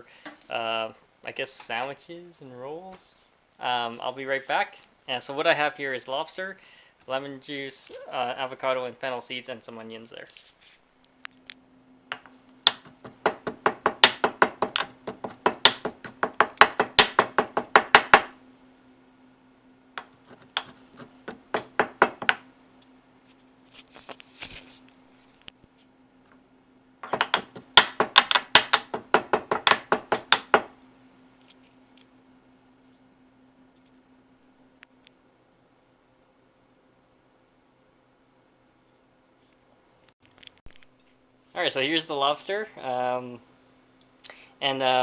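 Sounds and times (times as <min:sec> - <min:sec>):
utensil knocking on cutting board: 0:12.7 - 0:18.3, 0:21.3 - 0:22.4, 0:27.0 - 0:30.7.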